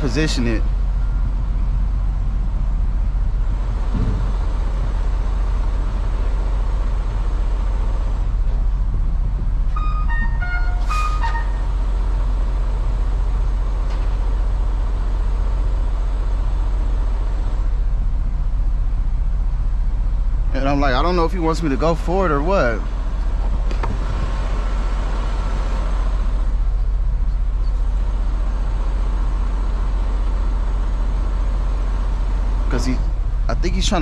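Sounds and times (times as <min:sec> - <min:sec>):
diesel truck idling: 0:00.0 - 0:34.0
short electronic tones: 0:09.7 - 0:11.7.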